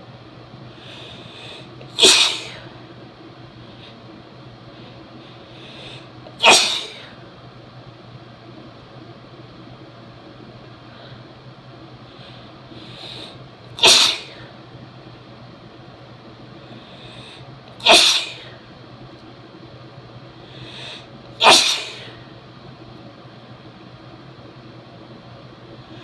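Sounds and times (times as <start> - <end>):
short in-breath: 0.7 - 2.7, 4.8 - 7.2, 12.1 - 14.5, 20.4 - 22.3
woman sneezing: 1.9 - 2.7, 6.4 - 7.2, 13.8 - 14.5, 17.8 - 18.6, 21.4 - 22.2.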